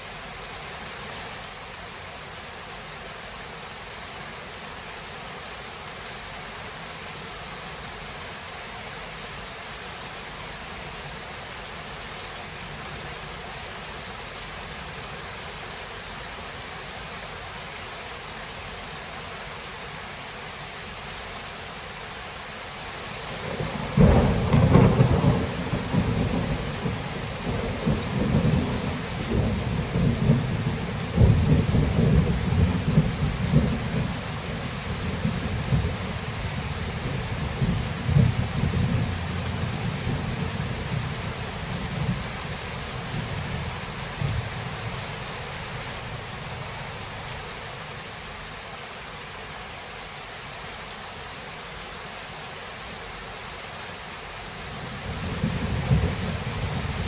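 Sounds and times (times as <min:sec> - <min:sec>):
rain hiss: 0:00.0 - 0:57.0
thunder rumbling: 0:23.3 - 0:47.4, 0:54.8 - 0:57.0.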